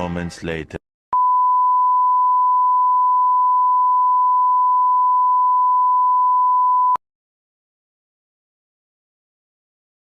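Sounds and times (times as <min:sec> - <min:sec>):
long electronic beep: 0:01.2 - 0:07.0.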